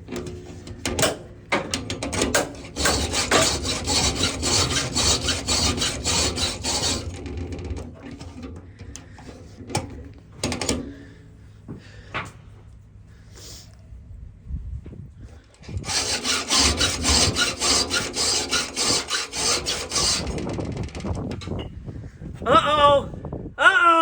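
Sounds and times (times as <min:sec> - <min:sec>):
hand file scraping saw teeth: 0:02.4 - 0:07.4, 0:15.7 - 0:21.1.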